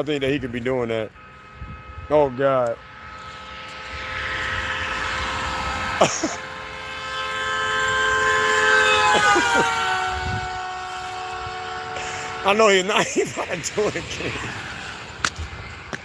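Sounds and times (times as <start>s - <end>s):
tyres rushing: 0.7s - 16.0s
car horn blast: 0.9s - 15.2s.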